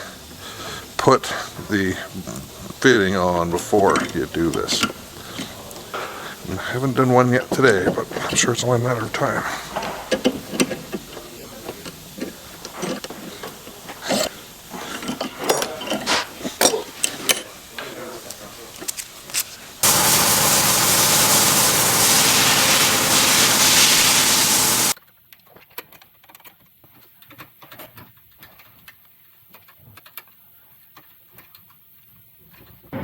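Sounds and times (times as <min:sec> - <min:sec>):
loud steady mechanical noise: 0:18.3 - 0:25.0.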